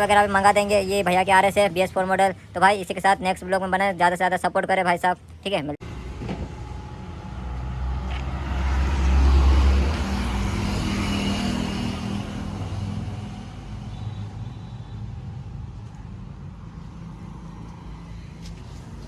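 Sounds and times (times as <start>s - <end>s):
vehicle engine rumble: 5.8s - 19.0s.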